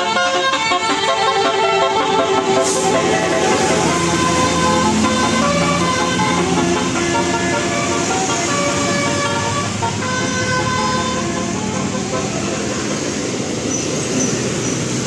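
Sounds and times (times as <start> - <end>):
bus musical air horn: 0.0 - 15.0
engine and traffic noise: 0.0 - 15.0.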